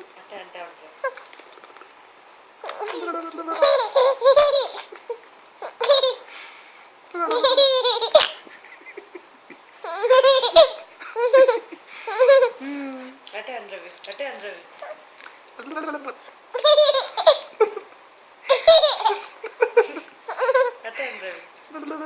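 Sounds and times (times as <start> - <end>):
baby giggling: 2.6 - 6.3, 7.2 - 12.8, 15.6 - 17.9, 18.5 - 20.8.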